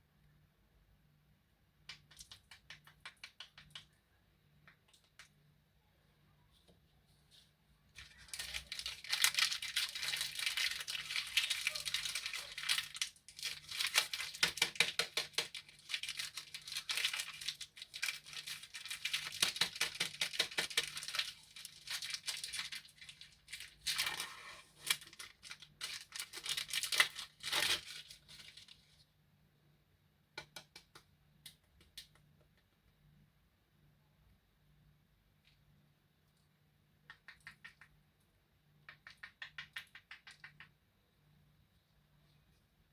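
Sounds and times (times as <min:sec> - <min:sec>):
plastic wrapper crinkling and tearing: 0:08.0 - 0:28.9.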